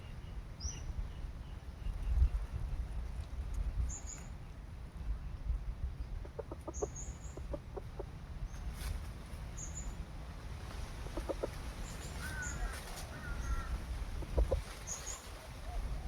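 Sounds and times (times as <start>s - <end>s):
small bird chirping: 6.0s - 8.9s, 9.5s - 10.0s
chicken clucking: 6.2s - 8.1s, 10.8s - 16.0s.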